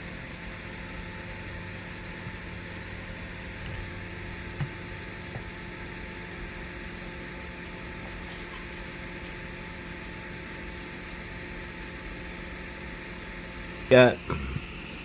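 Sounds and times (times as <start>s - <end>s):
fan hum and hiss: 0.0s - 15.0s.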